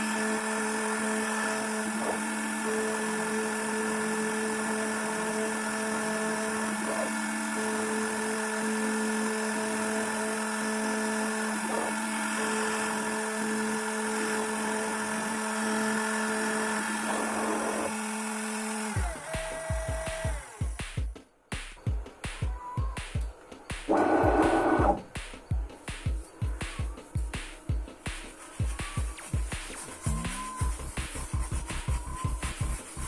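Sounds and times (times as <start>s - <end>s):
router spindle whine: 0.0s - 20.8s, 22.6s - 25.2s, 26.2s - 33.0s
higher machine tone: 21.9s - 27.3s.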